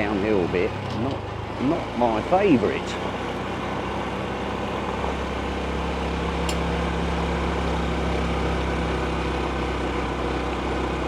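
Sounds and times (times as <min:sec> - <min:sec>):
motorcycle engine running: 0:00.0 - 0:11.0
wind and road noise: 0:00.0 - 0:11.0.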